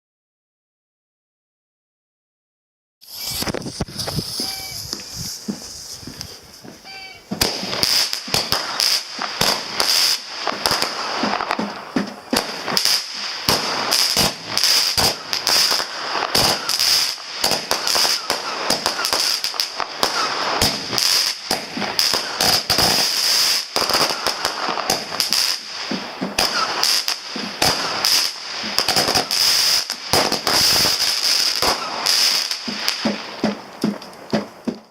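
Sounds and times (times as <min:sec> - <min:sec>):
crackling and popping stars: 0:03.0 - 0:05.9
firework shots banging: 0:07.2 - 0:34.9.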